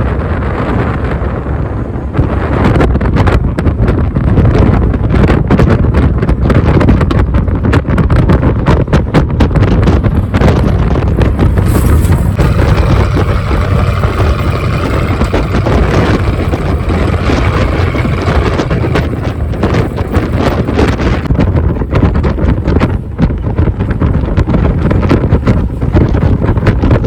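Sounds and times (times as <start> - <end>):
wind buffeting microphone: 0.0 - 27.0
loud truck engine: 9.9 - 21.4.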